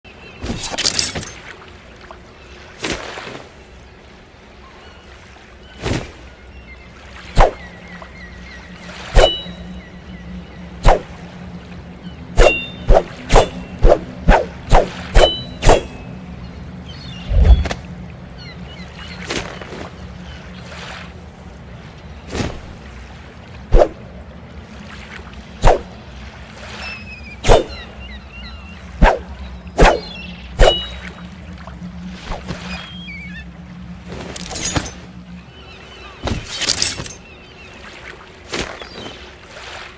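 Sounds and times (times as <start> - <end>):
sword swishes: 9.2 - 9.5, 12.4 - 16.0, 30.6 - 30.9.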